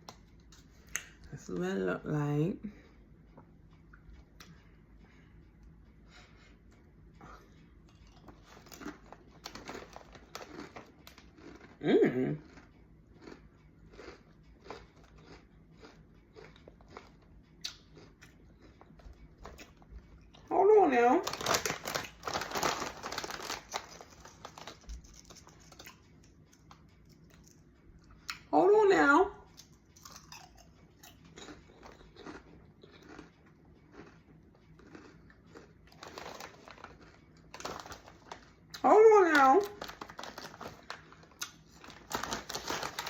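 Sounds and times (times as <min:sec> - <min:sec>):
person crunching chips: 0:08.1 - 0:19.8, 0:21.2 - 0:27.6, 0:29.6 - 0:38.8, 0:39.6 - 0:43.0.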